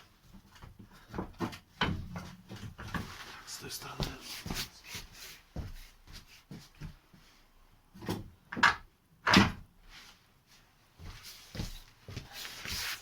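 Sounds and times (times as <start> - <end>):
clunks and knocks of metal parts: 0.4 - 3.1.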